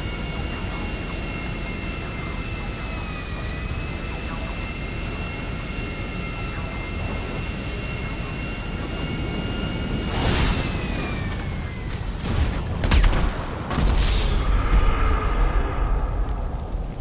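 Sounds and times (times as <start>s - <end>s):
high engine whine: 0.0s - 17.0s
heavy booms with deep rumble: 12.1s - 17.0s.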